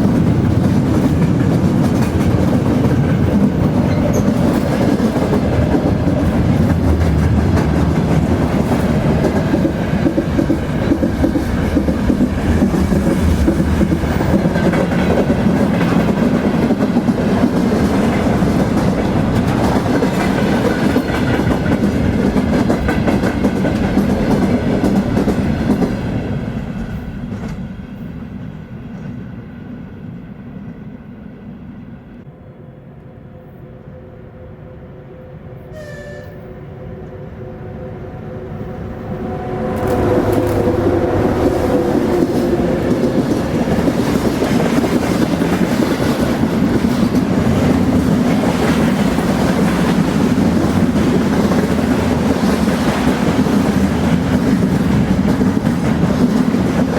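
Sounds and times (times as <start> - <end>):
train wheels clickety-clack: 0.0 - 29.4, 39.6 - 56.9
freight train rumbling: 0.0 - 56.9.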